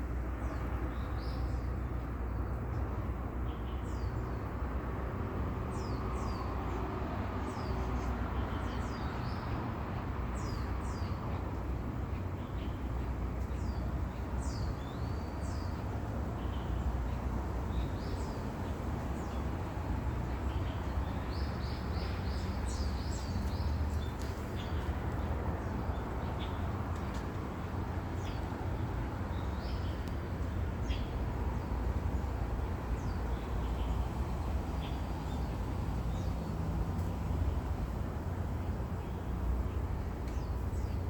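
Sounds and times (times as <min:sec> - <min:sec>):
small birds chirping: 0:10.3 - 0:41.0.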